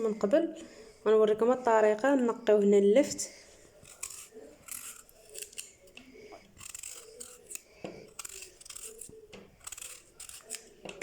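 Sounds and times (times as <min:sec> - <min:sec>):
knife cutting and scraping turnip: 0:03.7 - 0:11.0.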